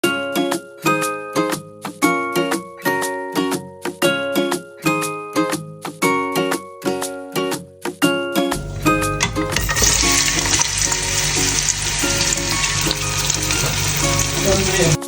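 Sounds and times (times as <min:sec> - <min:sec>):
food sizzling in hot oil: 0:08.6 - 0:15.0.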